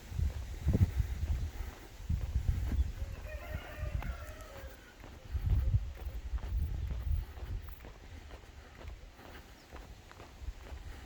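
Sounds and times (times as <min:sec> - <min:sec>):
low rumbling on microphone: 0:00.0 - 0:03.3.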